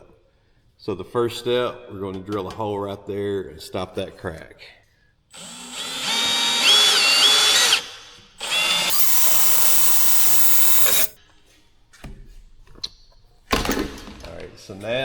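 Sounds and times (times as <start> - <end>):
electric drill whining: 5.4 - 11.2.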